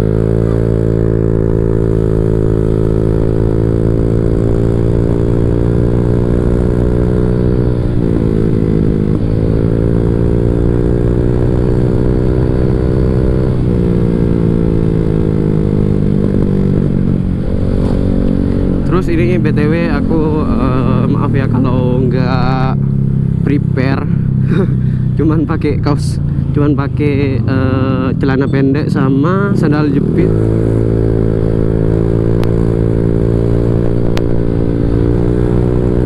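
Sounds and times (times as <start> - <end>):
scooter engine under throttle: 0.0 - 26.7.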